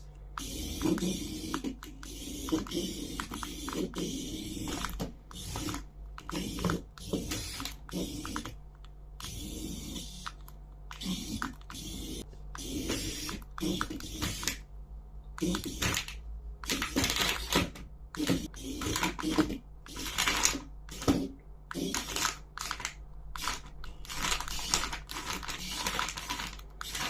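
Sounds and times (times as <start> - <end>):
plastic parts clicking and rattling: 0.8 - 8.6, 15.4 - 27.0
packaging rustling: 15.8 - 21.2, 21.8 - 27.0.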